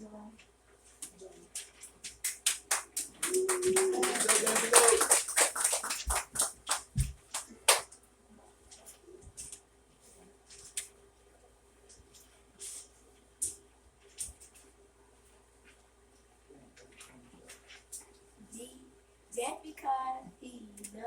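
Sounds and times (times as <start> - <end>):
congregation clapping: 2.2 - 8.0.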